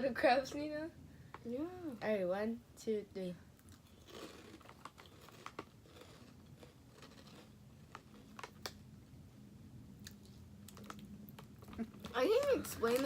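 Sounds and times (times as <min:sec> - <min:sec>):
people chewing crunchy chips: 0:03.6 - 0:08.8, 0:10.0 - 0:13.0.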